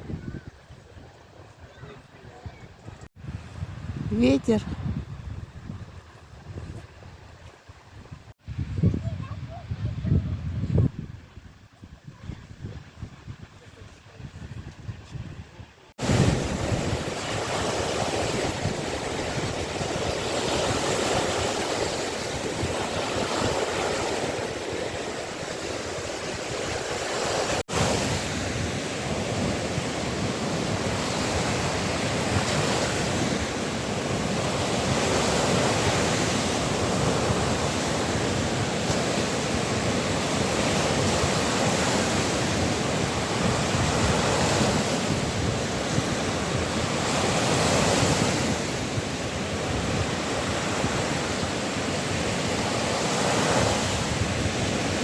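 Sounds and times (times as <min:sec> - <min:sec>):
wind buffeting microphone: 0:00.0 - 0:55.0
waves washing onto shore: 0:15.9 - 0:55.0.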